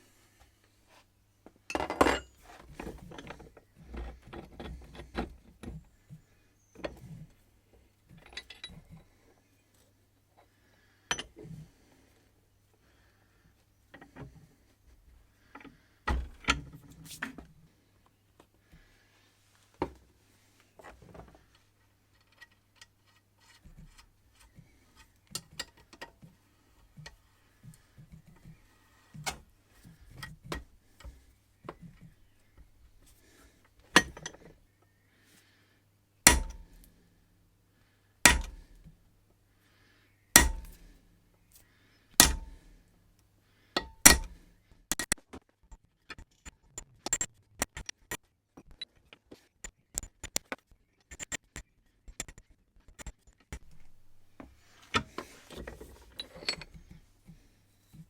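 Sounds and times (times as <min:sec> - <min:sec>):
sharp ringing blows on metal: 0:36.3 - 0:36.7, 0:40.4 - 0:40.8, 0:42.2 - 0:42.6, 0:43.9 - 0:44.4
metal tools clinking: 0:56.0 - 0:56.8.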